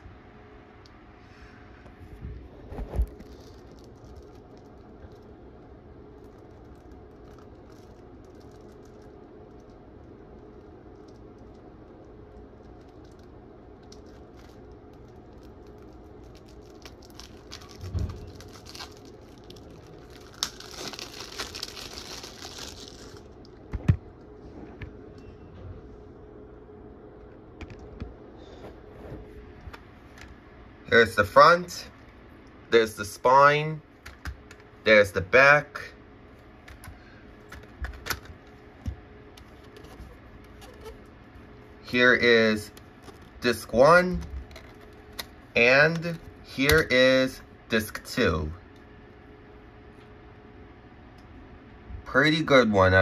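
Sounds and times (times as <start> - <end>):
packaging crinkling and tearing: 2.7 - 9.8, 10.4 - 23.6, 42.7 - 43.4, 44.2 - 46.2.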